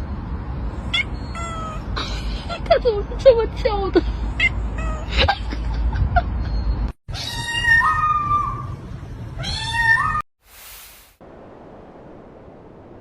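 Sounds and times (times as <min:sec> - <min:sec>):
cat meowing: 0:07.1 - 0:08.8, 0:09.4 - 0:10.2.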